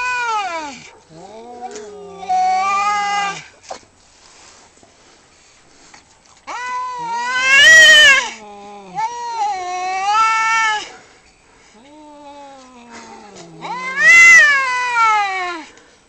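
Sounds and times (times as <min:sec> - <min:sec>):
cats yowling in a fight: 0:00.0 - 0:03.5, 0:06.5 - 0:11.1, 0:11.8 - 0:15.7.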